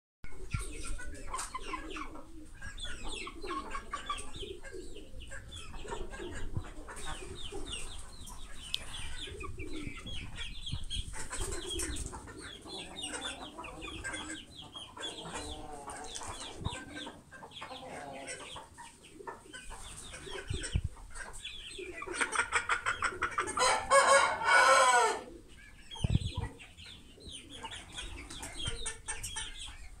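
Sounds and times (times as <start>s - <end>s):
chickens clucking: 0.3s - 30.0s
drawn-out chicken call: 21.3s - 25.7s.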